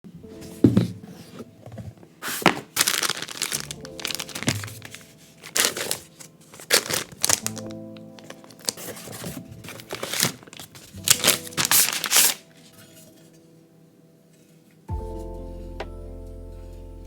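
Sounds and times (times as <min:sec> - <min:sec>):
lofi music with soft chords: 0:00.1 - 0:17.0
crinkling: 0:00.4 - 0:13.6.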